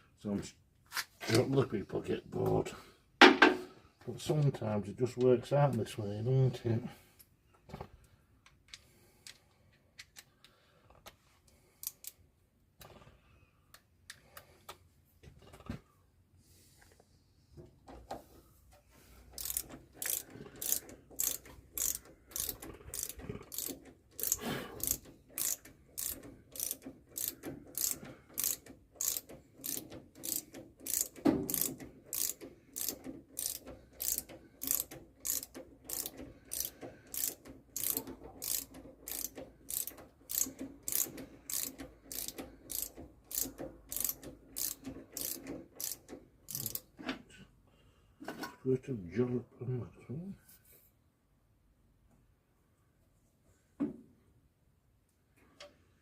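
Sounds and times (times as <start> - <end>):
socket ratchet clicking: 11.8 - 12.2, 19.4 - 46.9.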